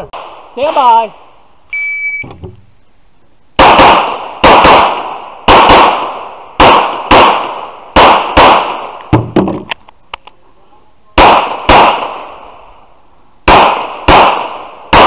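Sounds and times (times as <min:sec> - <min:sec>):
pistol shots echoing: 0:03.6 - 0:09.0, 0:11.2 - 0:12.4, 0:13.4 - 0:15.0.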